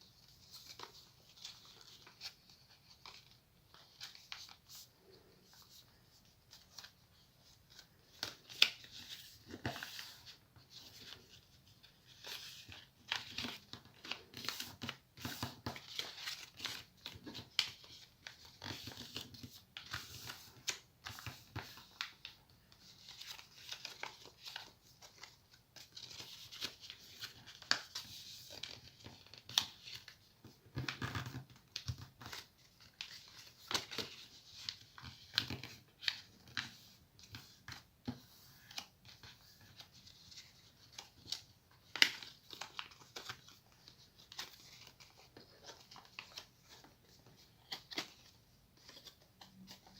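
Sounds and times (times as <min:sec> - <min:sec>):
paper folding and crinkling: 0:00.0 - 0:49.9.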